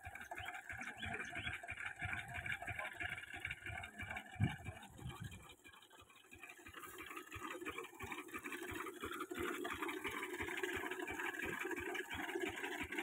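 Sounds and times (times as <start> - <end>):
diesel engine thumping steadily: 0.0 - 13.0.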